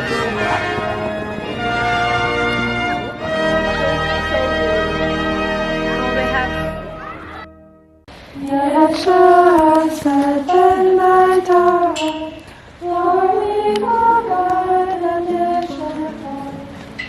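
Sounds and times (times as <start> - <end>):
girls singing slow melody: 8.2 - 17.0.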